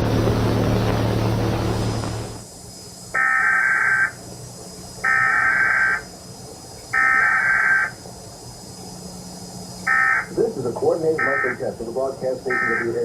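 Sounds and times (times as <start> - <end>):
digital data tone bursts: 3.1 - 4.2, 5.0 - 6.1, 6.9 - 8.0, 9.8 - 13.0.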